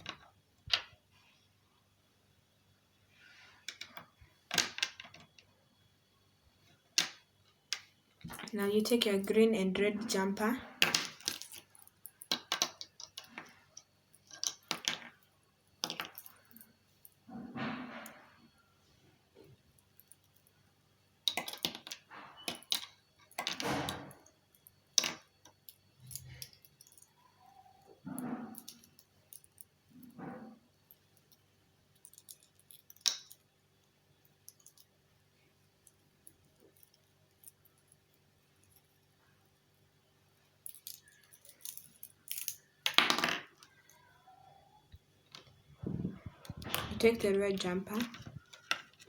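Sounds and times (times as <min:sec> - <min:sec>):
parts clinking and rattling: 0:10.7 - 0:18.4, 0:27.7 - 0:33.6, 0:34.3 - 0:35.0, 0:40.6 - 0:44.0
small parts clicking: 0:21.2 - 0:27.1, 0:30.9 - 0:33.5, 0:34.3 - 0:35.0, 0:40.6 - 0:44.0.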